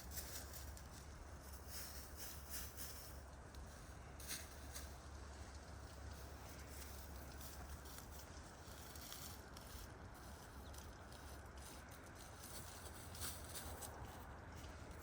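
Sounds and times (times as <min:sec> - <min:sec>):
chickens scratching and pecking: 0:00.0 - 0:15.0.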